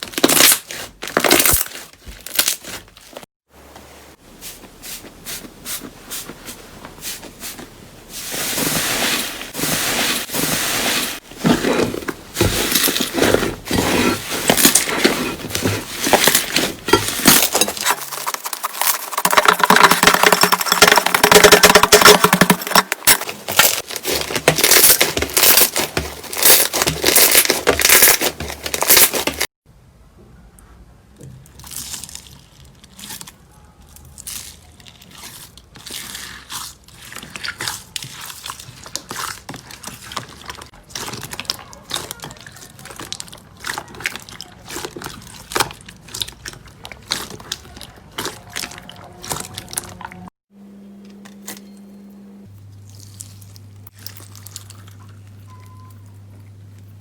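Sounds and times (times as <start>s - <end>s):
slime crackling and crunching: 0.0s - 3.2s, 12.4s - 29.5s, 31.5s - 33.4s, 34.0s - 50.3s, 52.7s - 55.8s.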